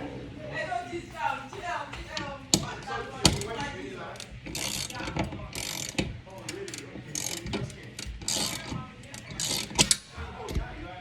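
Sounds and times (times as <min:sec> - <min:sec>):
ratchet wrench clicking: 0:02.1 - 0:10.7.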